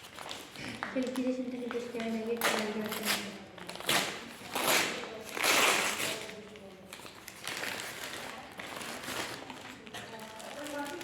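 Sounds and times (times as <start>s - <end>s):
packaging rustling and crinkling: 5.3s - 11.0s.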